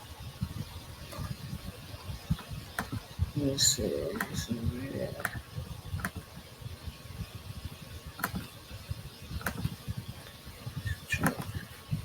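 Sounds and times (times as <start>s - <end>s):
computer mouse clicking: 2.4s - 3.0s, 4.2s - 4.4s, 6.0s - 6.2s, 8.2s - 8.5s, 9.4s - 9.8s.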